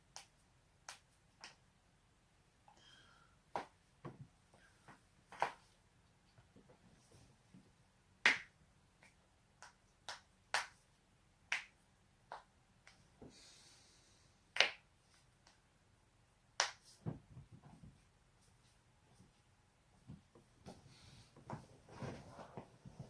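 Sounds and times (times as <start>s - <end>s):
soft hiss: 0.0s - 23.0s.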